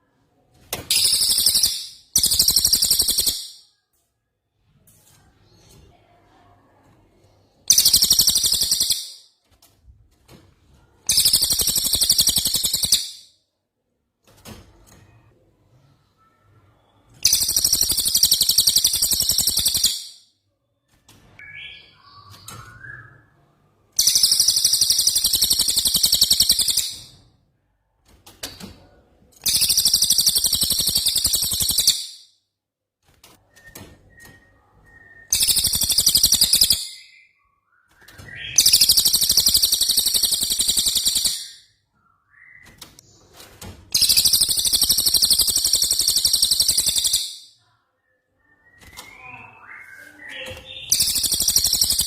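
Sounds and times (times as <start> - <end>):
faint lower bird chirps: 0.9 - 4.0, 6.7 - 9.4, 11.0 - 13.5, 15.0 - 27.4, 29.4 - 32.5, 33.4 - 43.3, 43.9 - 52.0.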